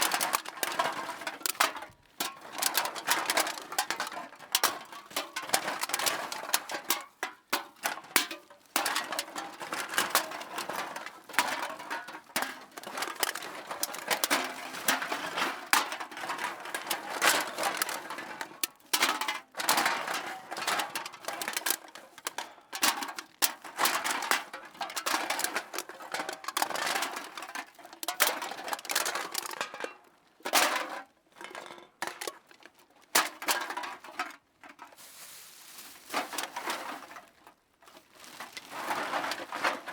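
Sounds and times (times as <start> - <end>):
metal cans clinking: 24.9 - 32.5.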